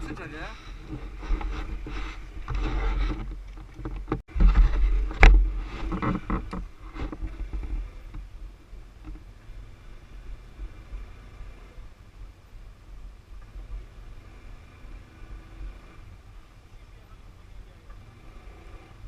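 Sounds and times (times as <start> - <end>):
atv jolting over rough ground: 0.0 - 9.4
atv engine rumble: 0.0 - 19.0.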